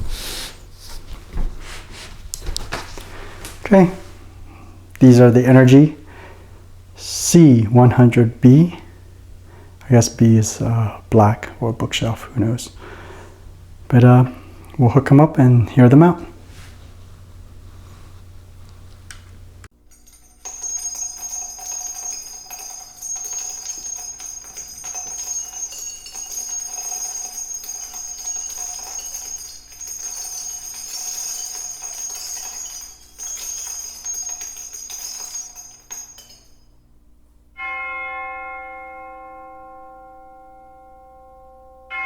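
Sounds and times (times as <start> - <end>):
music with jingling bells: 19.8 - 36.8
bell-like chime ringing: 19.9 - 36.8, 37.6 - 42.0.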